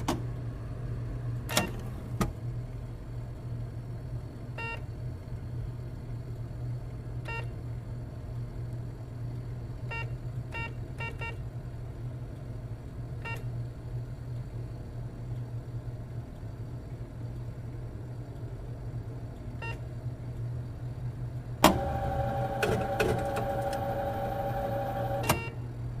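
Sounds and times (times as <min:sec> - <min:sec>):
low machine hum: 0:00.0 - 0:26.0
motorised mechanism whirring: 0:21.6 - 0:25.5
keypad beeps: 0:22.4 - 0:25.6.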